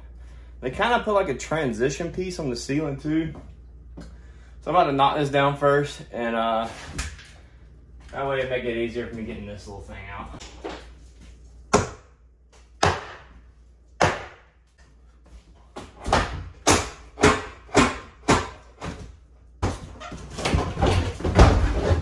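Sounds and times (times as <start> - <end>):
hammer striking wood: 12.8 - 13.3, 14.0 - 14.5, 16.0 - 18.7.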